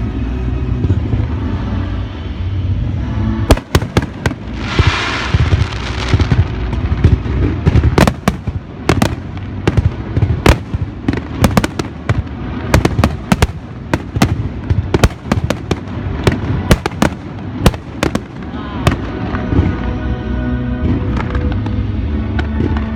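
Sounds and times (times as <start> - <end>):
low rumble of booms: 3.5 - 19.9.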